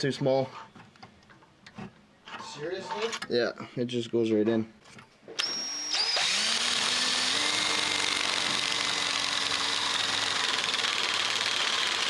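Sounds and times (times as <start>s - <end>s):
small motor whirring: 5.4s - 12.0s.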